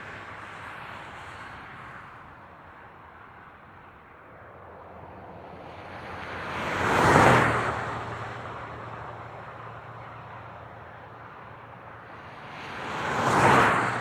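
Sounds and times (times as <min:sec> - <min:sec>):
highway traffic noise: 0:00.0 - 0:14.0
vehicle passing close by: 0:12.5 - 0:14.0.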